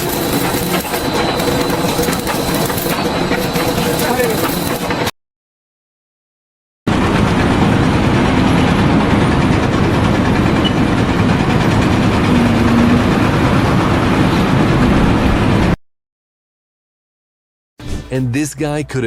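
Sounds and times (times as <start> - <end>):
heavy machinery engine rumbling: 0.0 - 5.1, 6.9 - 15.8.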